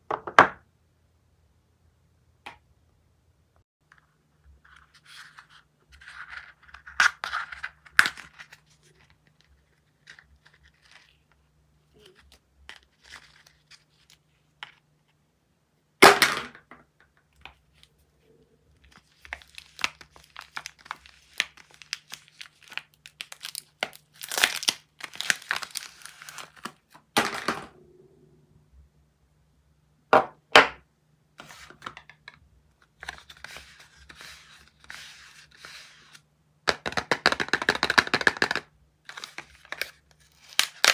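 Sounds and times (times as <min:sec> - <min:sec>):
wrappers crinkling and tearing: 0:18.9 - 0:26.8, 0:39.1 - 0:40.9.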